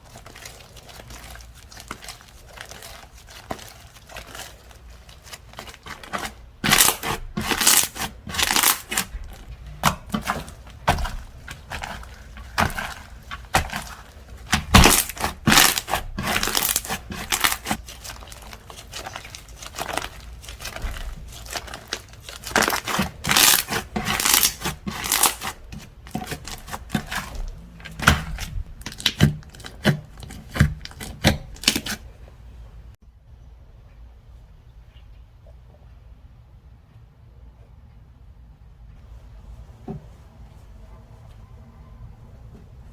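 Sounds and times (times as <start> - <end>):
slime squished by hand: 0.0 - 32.1.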